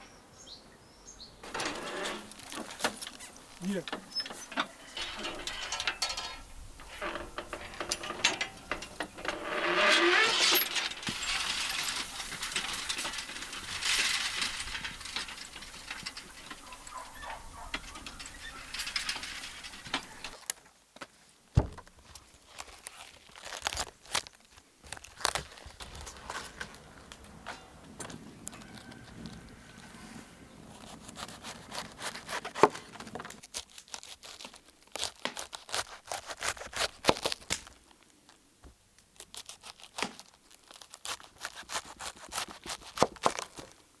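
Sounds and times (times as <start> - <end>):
metal rattling and clinking: 1.4 - 20.4.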